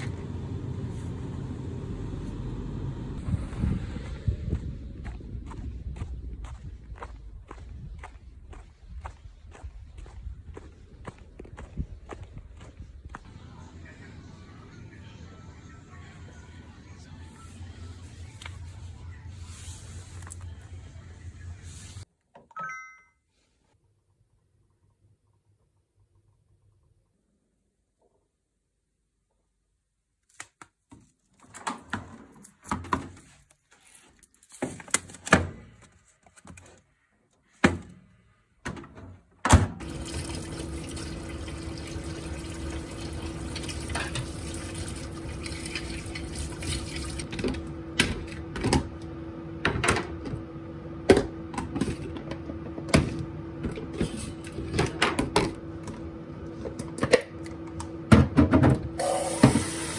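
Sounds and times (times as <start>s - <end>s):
running water with hum: 39.8s - 47.5s, 59.0s - 59.9s.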